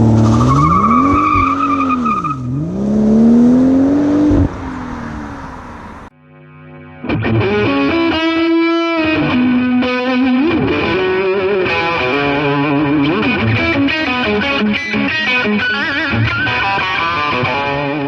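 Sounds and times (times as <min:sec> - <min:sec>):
rock music with distorted guitar: 0:06.2 - 0:18.0.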